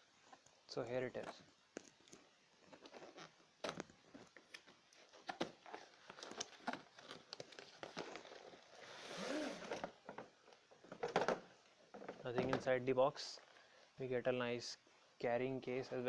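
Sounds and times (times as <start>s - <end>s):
cardboard packaging crinkling: 1.8s - 9.0s.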